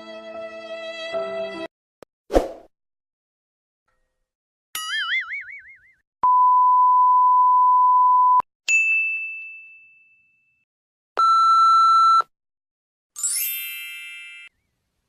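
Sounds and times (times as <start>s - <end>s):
censor bleep: 6.2s - 8.4s.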